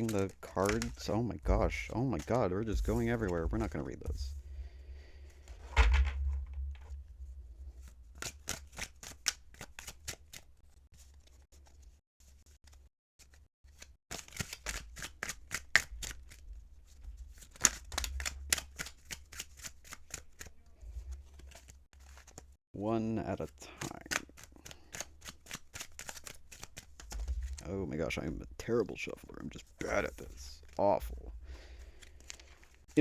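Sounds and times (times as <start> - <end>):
cards being shuffled: 0.0 - 4.3, 7.8 - 22.6, 23.8 - 28.3, 29.1 - 33.0.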